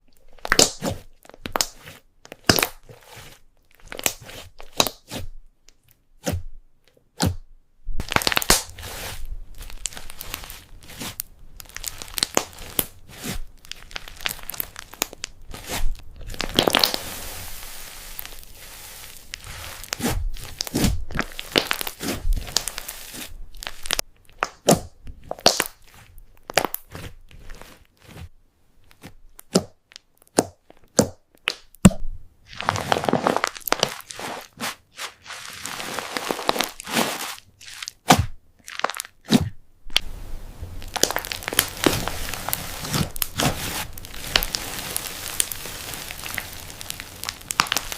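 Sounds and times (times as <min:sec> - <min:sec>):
slime clicking and popping: 0:08.0 - 0:08.7, 0:11.6 - 0:12.9, 0:13.7 - 0:15.4, 0:23.7 - 0:25.8, 0:40.8 - 0:42.3, 0:45.3 - 0:47.9.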